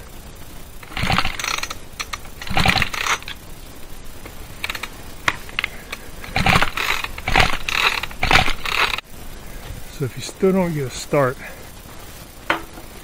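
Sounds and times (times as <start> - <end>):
chainsaw pull-starter rattling whir: 0.8 - 3.4, 4.6 - 9.0.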